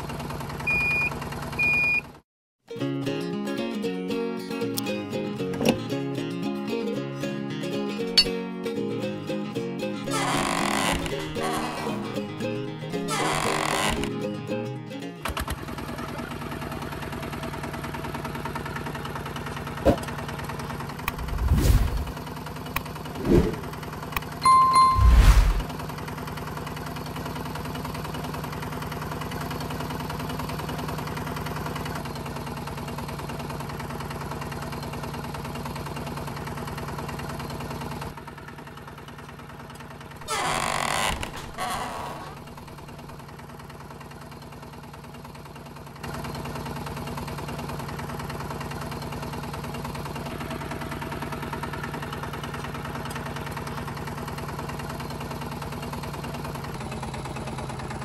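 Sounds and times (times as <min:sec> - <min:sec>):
small motor humming: 0:21.1 - 0:22.2.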